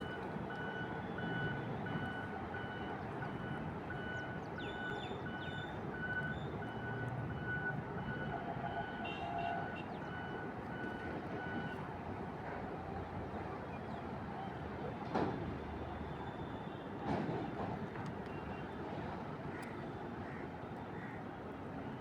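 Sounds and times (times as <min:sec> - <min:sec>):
vehicle reversing alarm beeping: 0:00.0 - 0:11.8.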